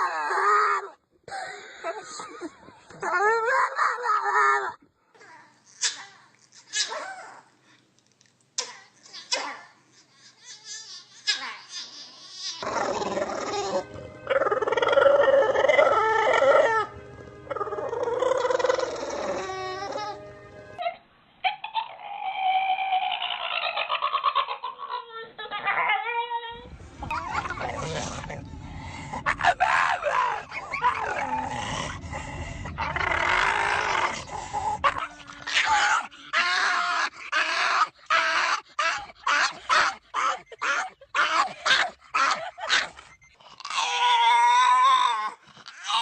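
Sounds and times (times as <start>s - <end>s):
dog howling: 12.6s - 20.9s, 25.6s - 42.4s
dog whining: 25.5s - 46.0s.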